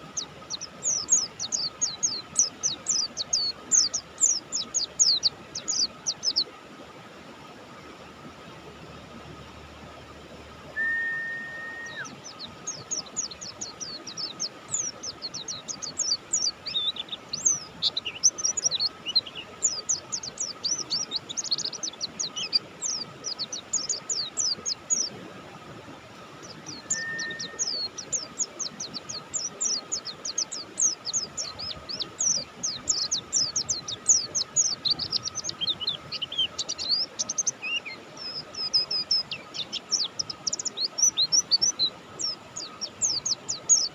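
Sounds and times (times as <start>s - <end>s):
steady whistle-like tone: 10.7s - 12.1s, 26.8s - 27.7s
bird singing high thin notes: 10.8s - 12.2s, 26.7s - 27.9s.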